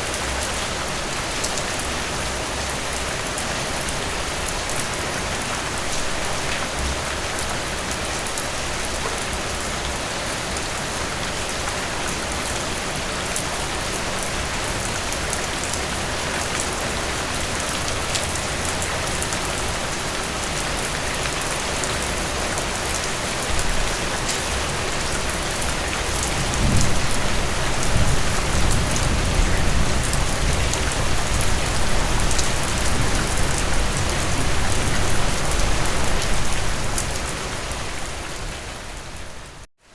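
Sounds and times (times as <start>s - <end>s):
steady rain: 0.0s - 39.9s
thunder rumble: 26.2s - 37.0s.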